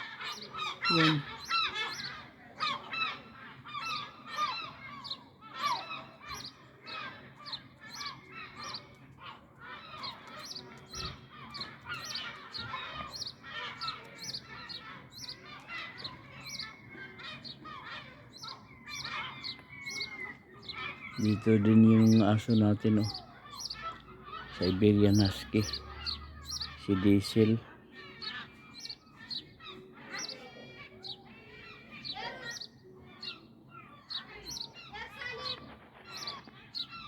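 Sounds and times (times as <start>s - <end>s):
seagulls calling: 0.0s - 37.0s.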